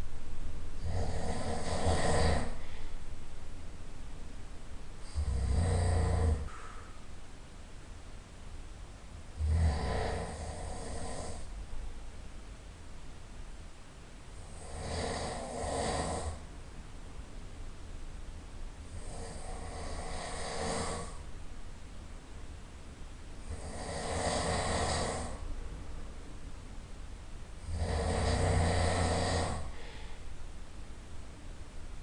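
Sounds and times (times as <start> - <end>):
person snoring loudly: 0.8 - 2.6, 5.0 - 6.5, 9.4 - 11.5, 14.4 - 16.4, 18.9 - 21.2, 23.4 - 25.4, 27.6 - 29.9
quiet breathing: 0.8 - 3.2, 5.0 - 7.1, 9.3 - 11.7, 14.3 - 16.5, 18.8 - 21.4, 23.4 - 25.6, 27.6 - 30.6.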